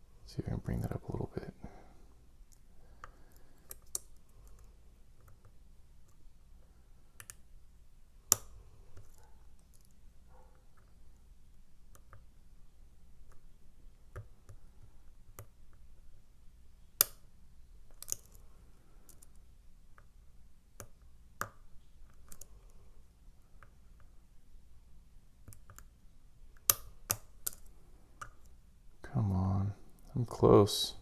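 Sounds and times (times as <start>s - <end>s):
lock picks clicking in a lock: 17.0s - 18.4s, 26.6s - 28.5s.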